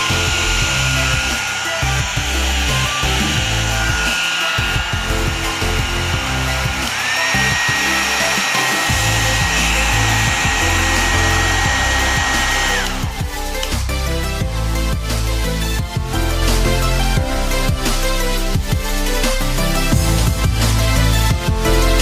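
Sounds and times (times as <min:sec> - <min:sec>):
hair dryer running: 0:00.0 - 0:16.2
background music with bass beat: 0:00.0 - 0:22.0.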